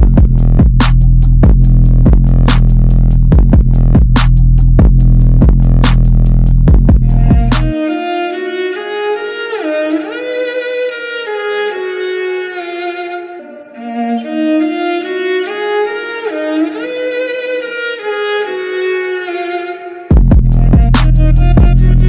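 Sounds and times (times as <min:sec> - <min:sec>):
sustained chords: 0:00.0 - 0:10.2, 0:19.9 - 0:22.0
sliding violin-like lead: 0:05.2 - 0:22.0.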